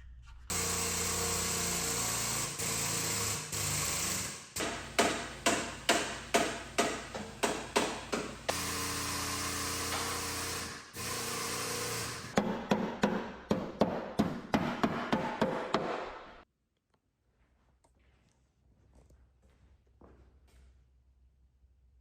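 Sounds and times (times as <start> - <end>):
power tool humming: 0.5 - 12.4.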